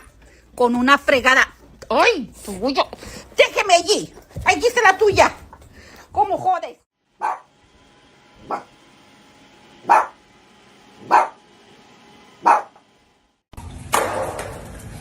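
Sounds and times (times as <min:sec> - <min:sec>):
dog barking: 0:07.2 - 0:07.5, 0:08.4 - 0:08.7, 0:09.8 - 0:10.2, 0:11.0 - 0:11.4, 0:12.4 - 0:12.8.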